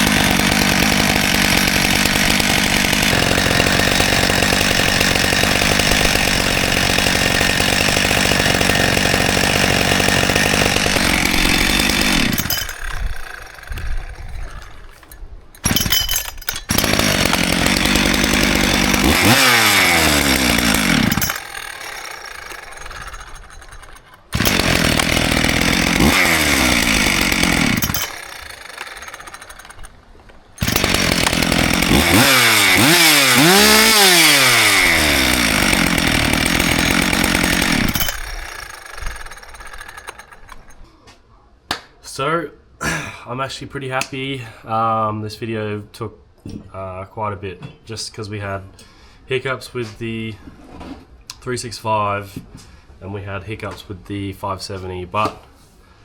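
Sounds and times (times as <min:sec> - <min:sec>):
chainsaw revving and idling: 0:00.0 - 0:40.8.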